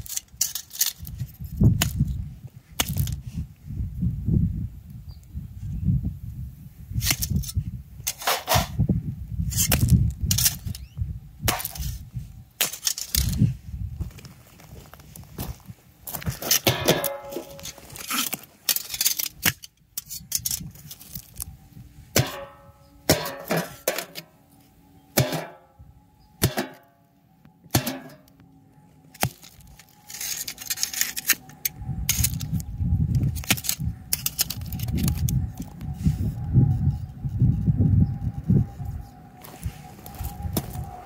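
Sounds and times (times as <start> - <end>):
metal pieces clinking: 0.0 - 1.1, 17.0 - 21.4, 29.4 - 32.6
loud low rumble: 31.2 - 41.0.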